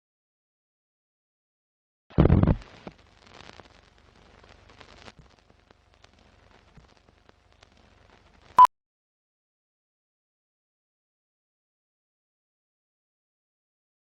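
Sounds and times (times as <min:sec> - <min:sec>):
faint crackling: 0:02.2 - 0:08.6.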